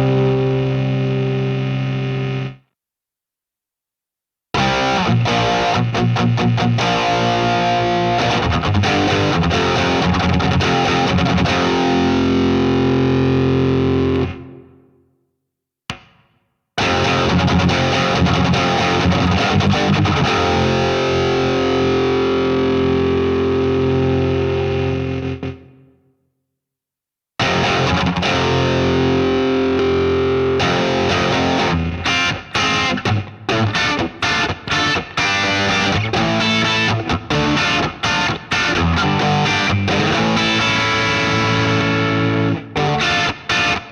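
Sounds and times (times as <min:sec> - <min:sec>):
distorted electric guitar: 0:00.0 - 0:02.7, 0:04.6 - 0:14.9, 0:16.8 - 0:26.0, 0:27.4 - 0:43.9.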